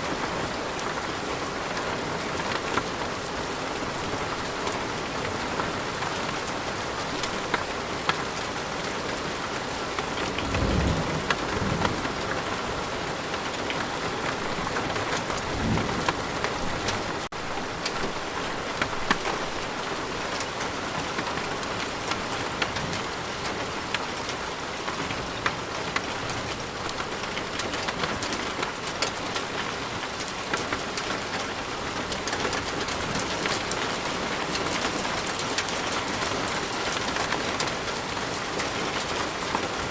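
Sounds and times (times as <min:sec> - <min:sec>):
rain pattering: 0:00.0 - 0:39.9
thunder rumbling: 0:10.2 - 0:13.5, 0:14.2 - 0:17.5.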